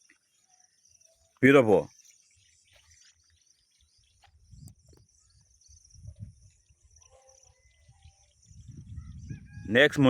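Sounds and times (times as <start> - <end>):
high insect buzz: 5.2 - 8.6.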